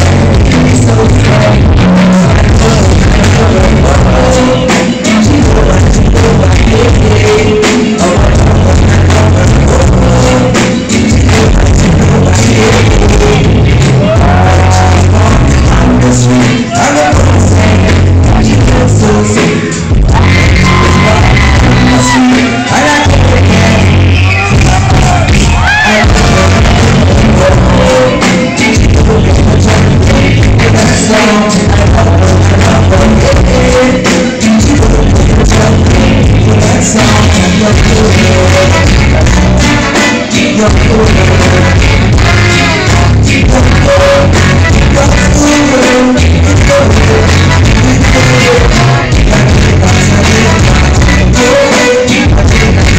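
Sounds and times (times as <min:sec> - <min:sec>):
distorted live reggae band: 0:00.0 - 0:52.9
person singing: 0:00.0 - 0:52.9
crowd shouting: 0:20.1 - 0:27.1.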